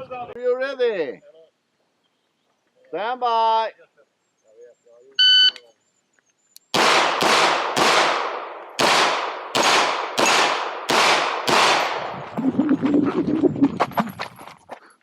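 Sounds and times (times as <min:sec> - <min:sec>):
pistol shots: 0:06.7 - 0:12.1.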